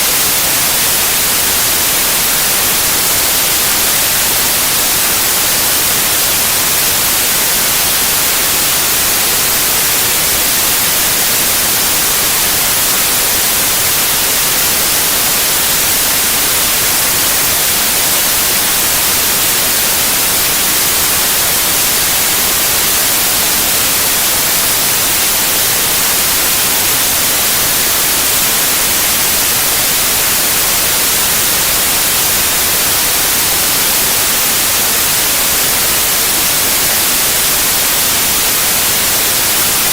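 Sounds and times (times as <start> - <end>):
white noise hiss: 0.0 - 39.9.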